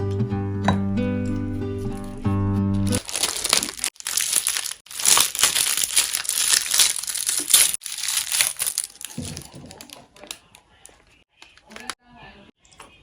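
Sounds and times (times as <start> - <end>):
plastic wrapper crinkling: 3.0 - 12.0.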